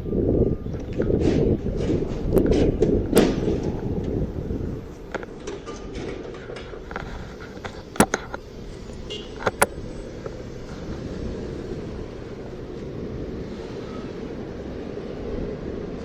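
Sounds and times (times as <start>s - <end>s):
wind rumble: 0.0s - 5.5s.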